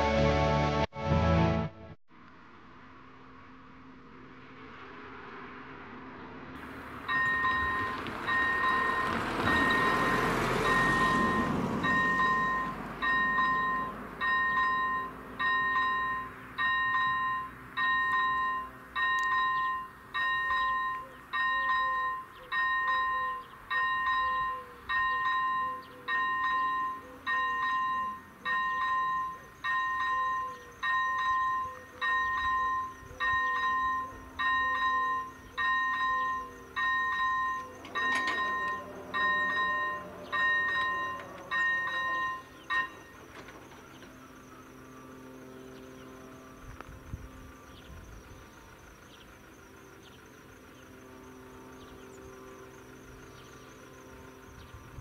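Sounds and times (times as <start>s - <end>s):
level crossing bell two-tone ding: 7.1s - 43.1s.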